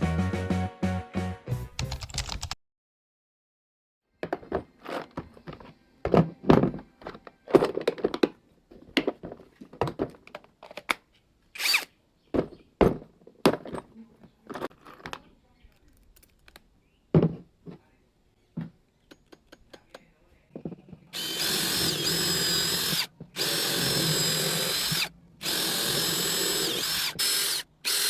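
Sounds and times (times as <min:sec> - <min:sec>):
intro music: 0:00.0 - 0:02.0
hammer and tools knocking on surface: 0:12.4 - 0:13.9, 0:17.1 - 0:17.8.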